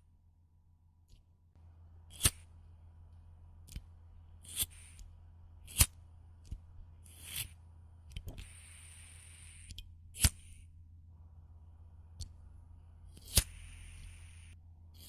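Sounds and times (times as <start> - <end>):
lighter clicking: 4.4 - 10.6, 13.1 - 14.5.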